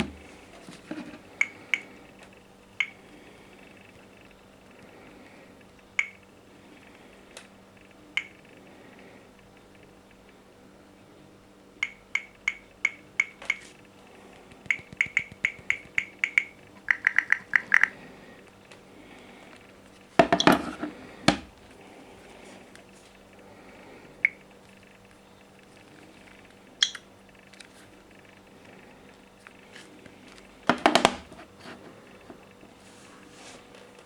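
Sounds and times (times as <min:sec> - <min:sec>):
phone alarm beeping: 0:14.7 - 0:17.9.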